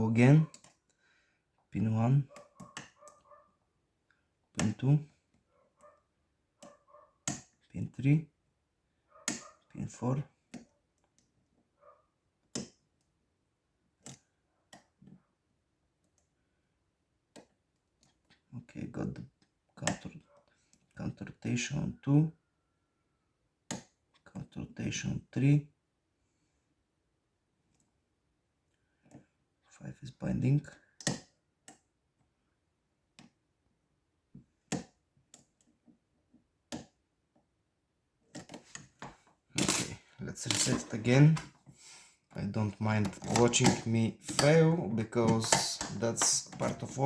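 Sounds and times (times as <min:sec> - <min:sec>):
lock pick clicking on padlock pins: 0:06.6 - 0:07.6, 0:09.2 - 0:09.5, 0:12.4 - 0:12.8, 0:31.0 - 0:31.9, 0:34.7 - 0:35.7, 0:38.3 - 0:38.8, 0:39.6 - 0:41.5, 0:42.9 - 0:47.0
metallic clicks of lock picking: 0:43.0 - 0:47.0.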